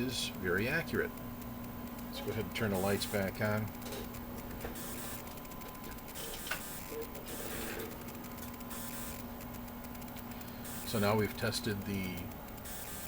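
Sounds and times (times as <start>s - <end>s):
electronics humming and whirring: 0.0s - 13.0s
light clicks: 0.3s - 13.0s.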